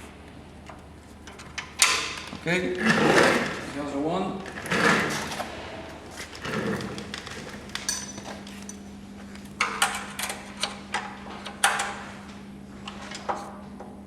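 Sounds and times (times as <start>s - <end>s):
metallic clinks of tools and screws: 7.8s - 8.8s.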